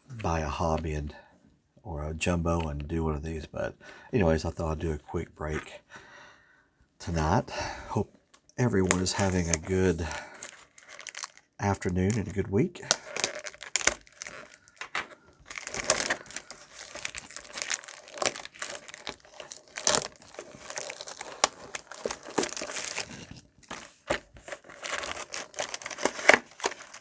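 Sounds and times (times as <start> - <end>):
plastic wrapping crinkling and tearing: 8.3 - 27.0.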